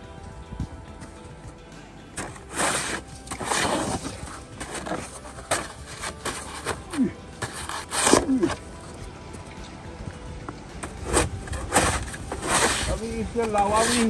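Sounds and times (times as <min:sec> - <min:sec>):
shovel scraping wet snow: 0:02.2 - 0:08.6, 0:10.8 - 0:14.0.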